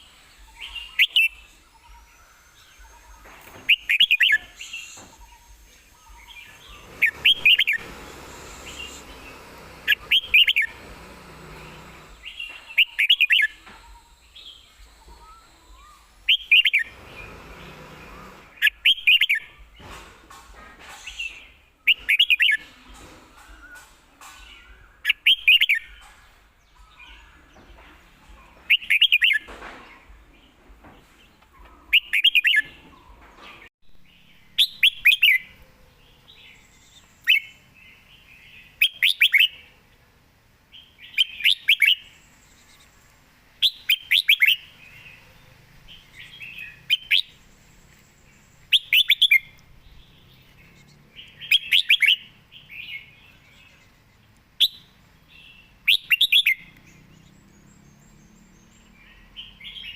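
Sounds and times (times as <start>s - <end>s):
bird singing whistled phrases: 0.4s - 2.1s, 41.2s - 42.1s, 51.5s - 52.3s, 55.9s - 56.6s.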